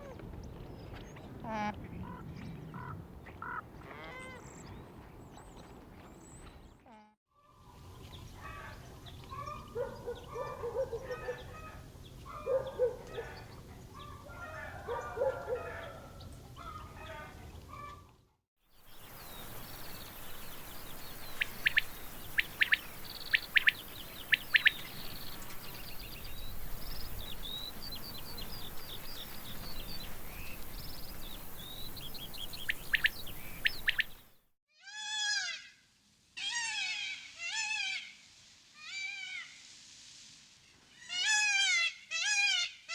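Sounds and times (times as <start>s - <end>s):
bird chirps and peeps: 19.0s - 34.2s.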